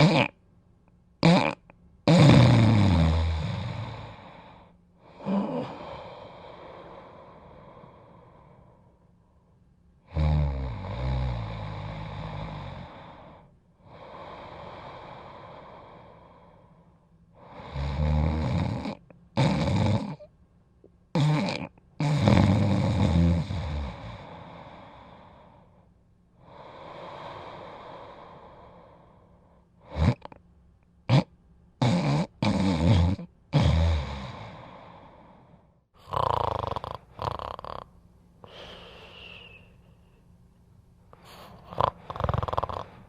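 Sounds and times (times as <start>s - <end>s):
person snoring: 0.0s - 0.3s, 1.2s - 9.0s, 10.0s - 16.8s, 17.4s - 20.3s, 21.2s - 25.7s, 26.4s - 30.4s, 31.1s - 39.7s, 41.2s - 43.0s
whistling breath: 38.5s - 40.3s.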